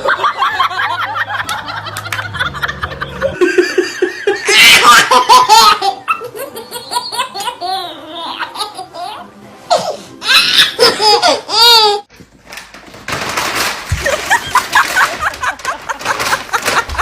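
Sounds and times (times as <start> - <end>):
people laughing: 0.0 - 9.2, 13.9 - 17.0.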